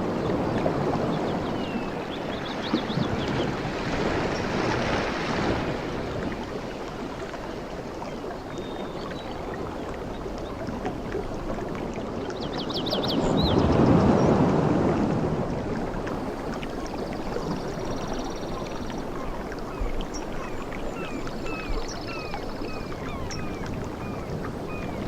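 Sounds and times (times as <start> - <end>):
waves washing onto beach: 0.0 - 25.0.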